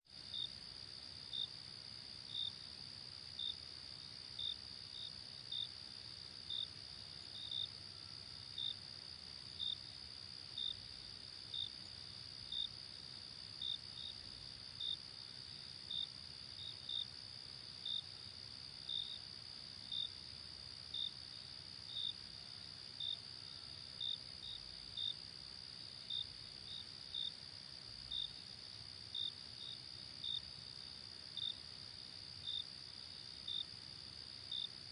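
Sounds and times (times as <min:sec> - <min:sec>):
loud insect chirp: 0:20.9 - 0:34.9.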